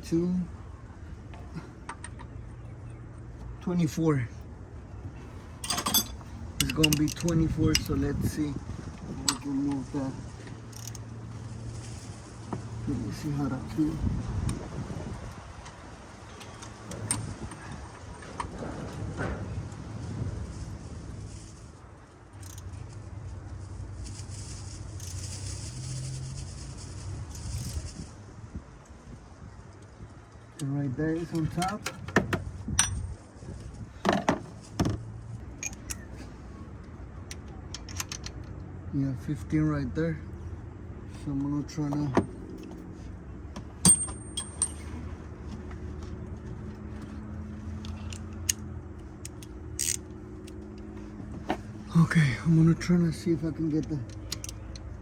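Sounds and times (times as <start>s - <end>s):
wrench clicking on bolt: 5.6s - 7.9s, 49.2s - 50.0s
metal clicking and scraping: 5.6s - 9.9s, 10.5s - 11.1s, 35.5s - 36.2s, 37.2s - 38.7s, 47.8s - 51.0s, 53.7s - 55.0s.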